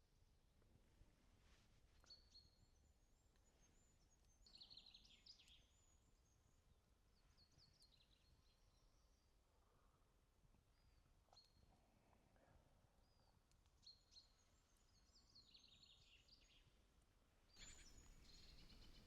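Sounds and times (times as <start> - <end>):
songbird chirps: 2.0 - 9.9, 12.9 - 16.9, 17.5 - 19.0.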